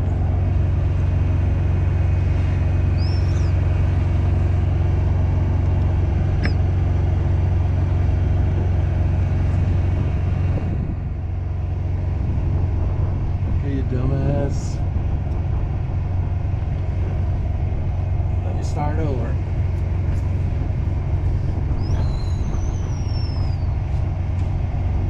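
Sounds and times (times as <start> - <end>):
engine idling: 0.0 - 25.0
sharp click: 6.4 - 6.6.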